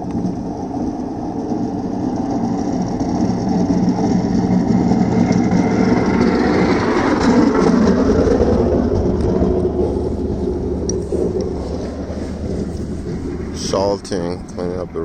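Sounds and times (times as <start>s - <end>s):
diesel truck engine running: 0.0s - 15.0s.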